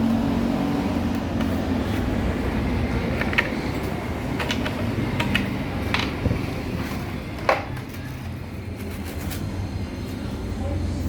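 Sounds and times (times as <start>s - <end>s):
hand tools clicking and knocking: 3.0s - 6.5s, 7.3s - 8.0s.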